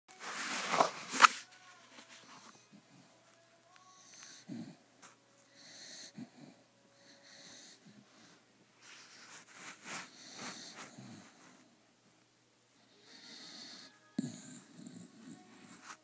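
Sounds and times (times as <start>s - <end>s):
airy hissing breaths: 5.5s - 11.8s, 12.8s - 15.9s
person snoring: 12.8s - 15.8s.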